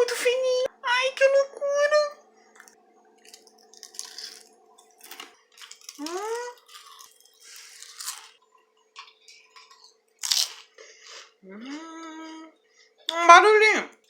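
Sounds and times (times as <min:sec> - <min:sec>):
crackers crunching being chewed: 0:02.5 - 0:11.4.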